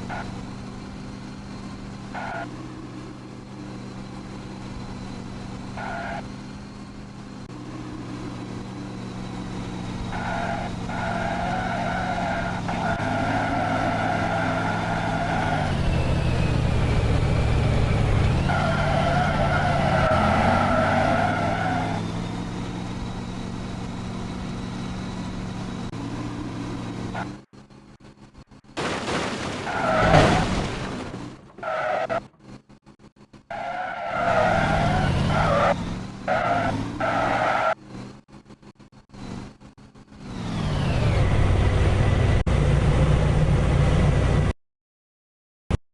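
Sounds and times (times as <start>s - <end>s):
vehicle engine: 0.0s - 44.6s
high squealing tone: 8.0s - 27.4s.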